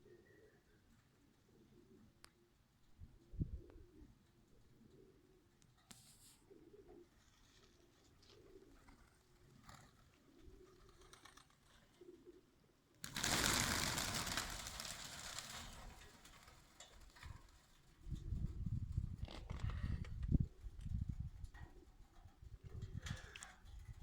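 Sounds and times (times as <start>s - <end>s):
pigeons cooing: 0.0s - 2.2s, 3.6s - 5.6s, 6.4s - 15.4s.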